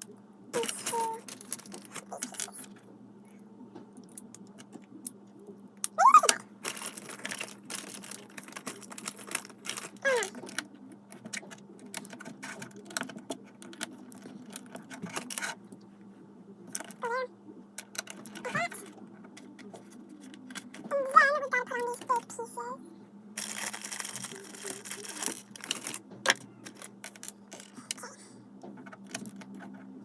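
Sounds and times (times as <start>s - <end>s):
plastic bricks clicking and rattling: 0.6s - 2.7s, 6.2s - 15.6s, 17.8s - 20.9s, 23.4s - 27.8s, 28.7s - 29.8s.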